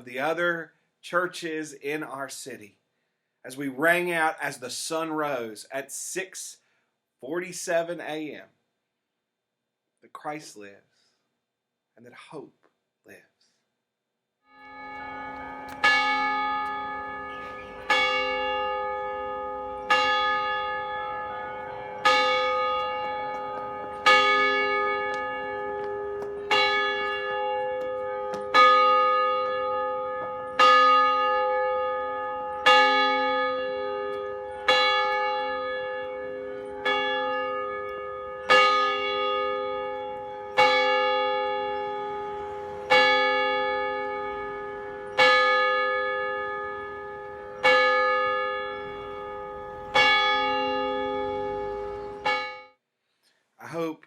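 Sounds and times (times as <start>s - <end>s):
church bell tolling: 14.5s - 52.7s.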